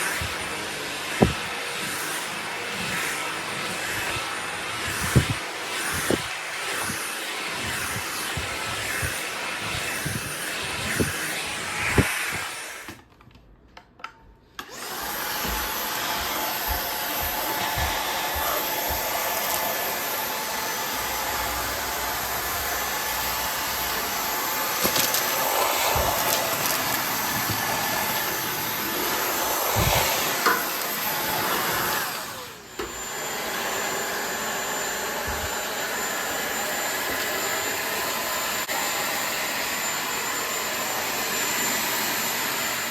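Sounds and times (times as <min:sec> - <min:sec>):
stick vacuum running: 0:14.6 - 0:42.9.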